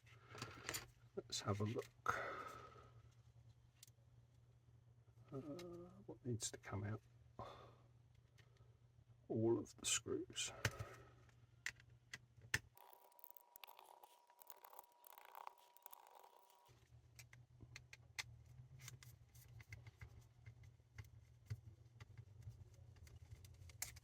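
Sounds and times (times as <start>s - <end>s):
faint steady whine: 12.7s - 17.4s
screwdriver clicks and scrapes: 12.8s - 17.4s.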